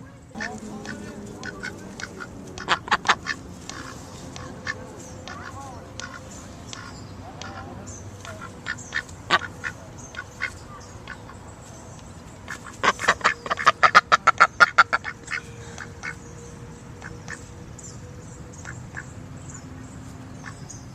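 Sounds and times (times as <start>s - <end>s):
duck quacking: 0.4s - 11.4s, 12.4s - 16.2s.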